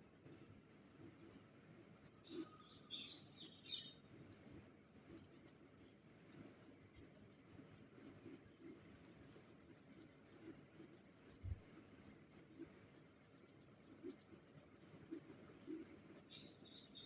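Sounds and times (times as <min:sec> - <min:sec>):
pen scratching on paper: 0:04.3 - 0:17.0.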